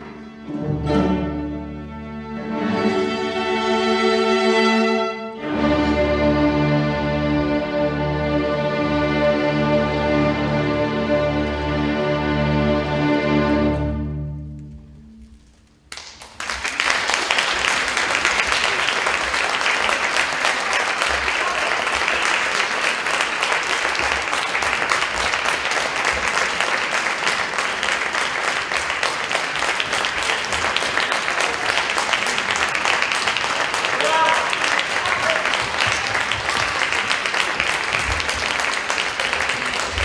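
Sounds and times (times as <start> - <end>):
audience applauding: 15.9 - 40.0.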